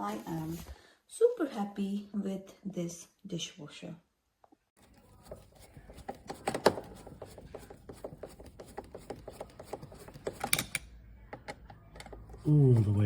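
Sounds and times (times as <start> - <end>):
screwdriver clicking and scraping metal: 4.8 - 10.8.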